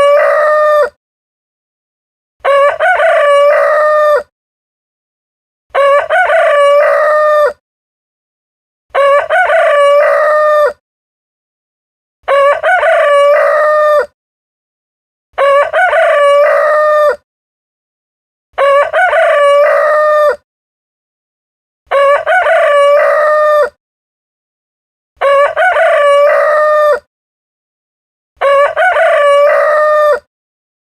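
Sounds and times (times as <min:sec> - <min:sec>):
rooster crowing: 0:00.0 - 0:01.0, 0:02.4 - 0:04.3, 0:05.8 - 0:07.6, 0:08.9 - 0:10.8, 0:12.3 - 0:14.1, 0:15.4 - 0:17.2, 0:18.6 - 0:20.4, 0:21.9 - 0:23.8, 0:25.2 - 0:27.1, 0:28.4 - 0:30.3.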